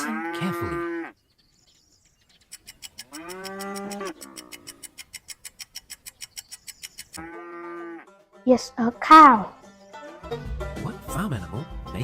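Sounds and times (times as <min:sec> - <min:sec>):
cow mooing: 0:00.0 - 0:01.2, 0:03.0 - 0:04.8, 0:07.2 - 0:08.1
rapid steady ticking: 0:02.3 - 0:07.2.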